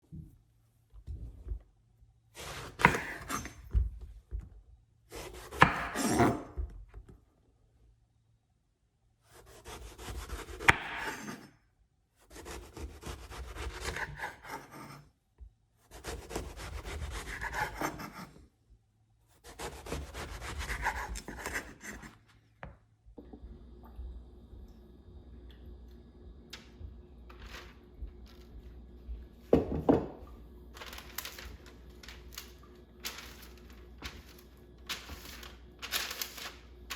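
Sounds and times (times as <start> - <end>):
knife sawing through eggplant: 9.3 - 11.5, 12.3 - 15.0, 15.9 - 18.4, 19.4 - 22.2.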